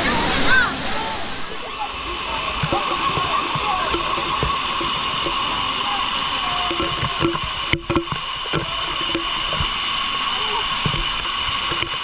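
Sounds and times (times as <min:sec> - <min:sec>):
people's voices: 0:00.0 - 0:07.8
waterfall rushing: 0:00.0 - 0:12.0.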